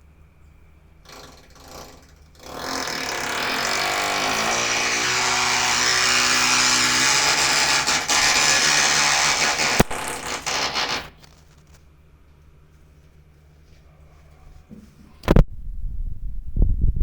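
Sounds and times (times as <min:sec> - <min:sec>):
power tool grinding: 0:01.1 - 0:11.4.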